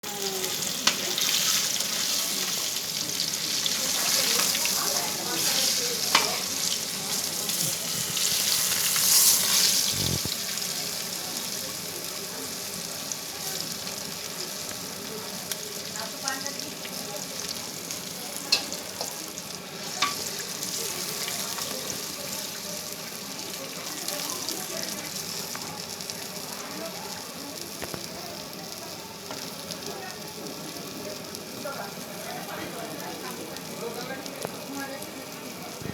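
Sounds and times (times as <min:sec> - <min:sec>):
fish sizzling in hot oil: 0:00.0 - 0:35.9
utensil clicking against pan: 0:06.1 - 0:06.5, 0:18.5 - 0:19.2.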